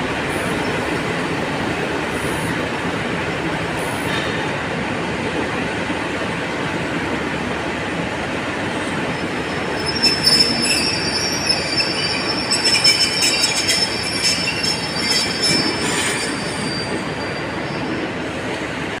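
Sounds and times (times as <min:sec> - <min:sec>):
diesel locomotive rumbling: 0:00.0 - 0:19.0
train wheels squealing: 0:08.9 - 0:18.4.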